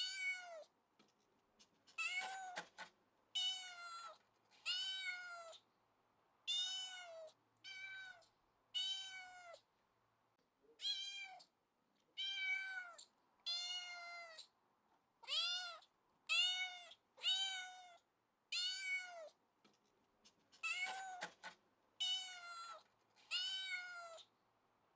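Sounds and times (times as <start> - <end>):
cat meowing: 0.0 - 0.7, 3.4 - 5.6, 6.5 - 9.6, 10.8 - 11.5, 12.1 - 14.5, 15.2 - 19.4, 22.0 - 24.3.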